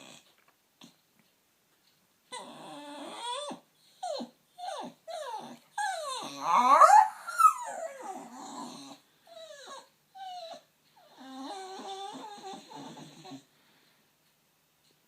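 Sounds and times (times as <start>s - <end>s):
dog whining and grumbling: 2.3s - 13.5s.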